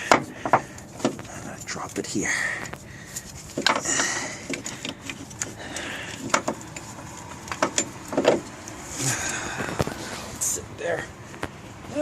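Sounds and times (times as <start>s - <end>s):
metal clicks and knocks: 3.5s - 8.8s.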